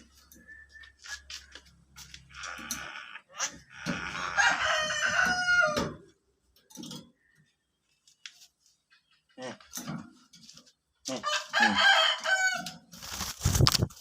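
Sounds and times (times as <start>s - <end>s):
bird mimicking rooster crow: 4.0s - 6.0s, 11.2s - 12.8s.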